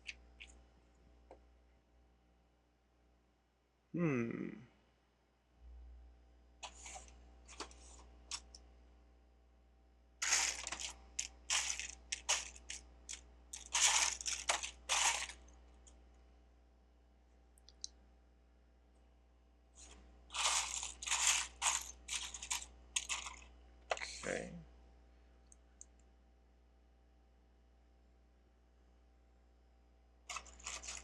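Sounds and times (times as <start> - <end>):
plastic bricks clattering: 10.2 - 15.4, 20.3 - 24.0, 30.3 - 31.0.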